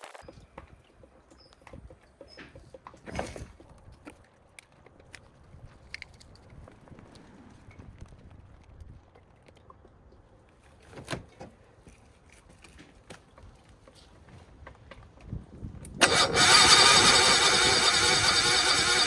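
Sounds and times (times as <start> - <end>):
excavator engine starting: 16.0 - 19.0.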